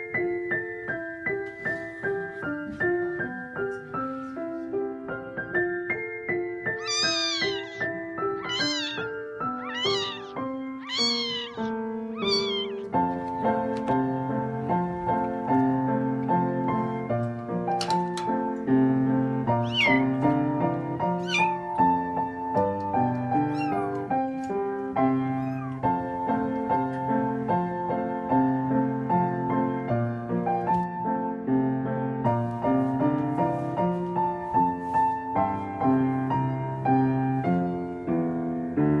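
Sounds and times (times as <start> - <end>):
piano background music: 0.0 - 39.0
kitten meowing: 6.8 - 13.7, 19.6 - 20.3, 21.1 - 21.9, 23.4 - 24.1, 25.2 - 26.0.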